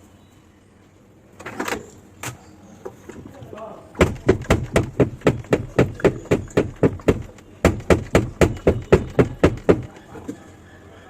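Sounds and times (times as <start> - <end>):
spin dryer drum knocking: 4.0 - 10.0.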